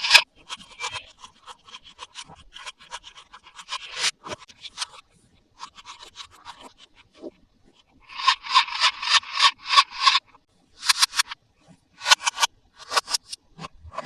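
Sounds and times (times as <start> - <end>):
toy packaging scratched by hand: 0.0 - 5.0, 8.1 - 10.2, 10.8 - 11.4, 12.0 - 13.4.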